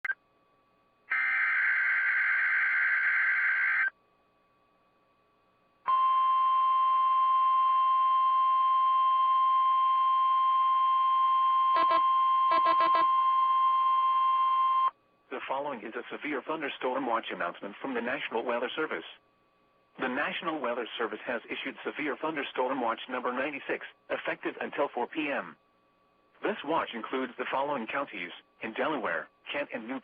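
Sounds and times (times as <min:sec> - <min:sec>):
screeching digital data burst: 0:01.1 - 0:03.9, 0:11.8 - 0:13.0
steady warning alarm tone: 0:01.1 - 0:03.9, 0:05.9 - 0:14.9.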